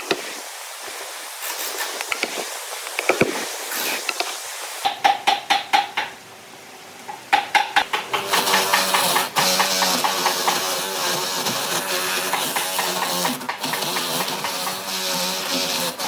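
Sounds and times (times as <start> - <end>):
steady hiss: 0.0 - 16.0
knocks and taps: 4.1 - 6.2, 7.1 - 10.6.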